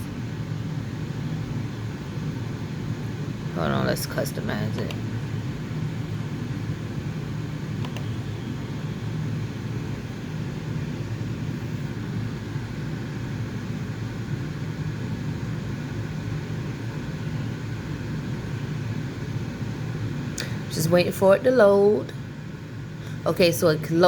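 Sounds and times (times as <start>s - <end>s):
faint steady tones: 0.0s - 24.0s
low machine hum: 0.0s - 24.0s
light click: 7.8s - 8.1s.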